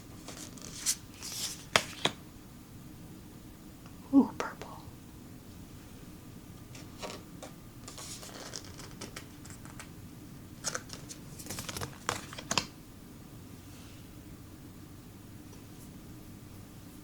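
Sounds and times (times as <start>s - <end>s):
cards sliding and rustling: 0.2s - 2.2s, 6.7s - 9.9s, 10.6s - 12.7s
cards snapping and tapping: 0.3s - 2.2s, 7.9s - 9.9s, 10.6s - 12.7s.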